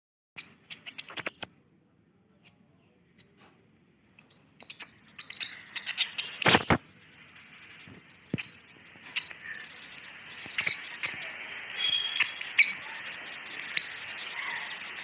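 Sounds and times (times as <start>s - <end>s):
squirrel chirping: 0.4s - 1.6s, 4.1s - 15.0s.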